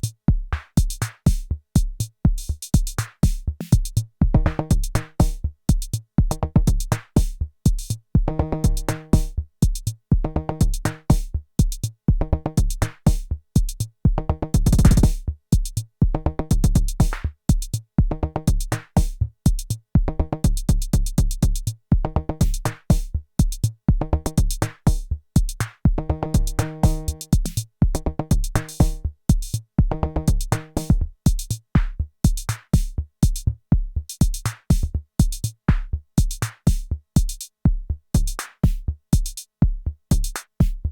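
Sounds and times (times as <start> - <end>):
drum machine kick: 0.0 - 40.9
dense drum roll: 14.6 - 15.2
pitched drum notes: 14.6 - 15.2, 26.4 - 29.4
hi-hat ticks: 14.6 - 15.8, 24.4 - 27.7, 28.3 - 29.6, 30.3 - 33.5, 34.1 - 37.6, 38.2 - 40.8.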